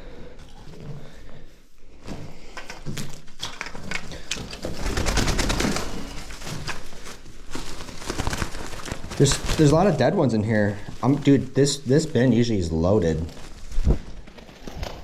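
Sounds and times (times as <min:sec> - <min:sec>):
rapid clattering and scuffling: 0:02.0 - 0:12.3.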